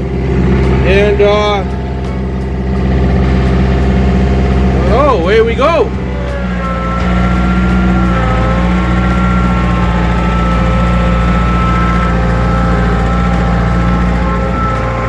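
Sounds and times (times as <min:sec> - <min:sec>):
thin steady whine: 0:00.0 - 0:15.0
tractor engine under load: 0:00.0 - 0:15.0.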